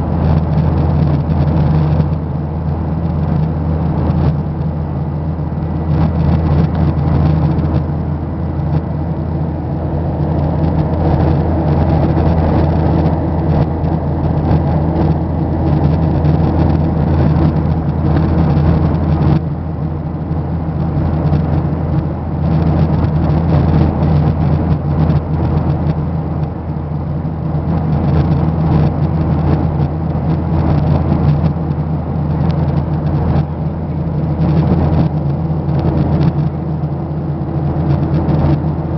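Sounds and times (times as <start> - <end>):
airliner cabin engine drone: 0.0 - 38.9.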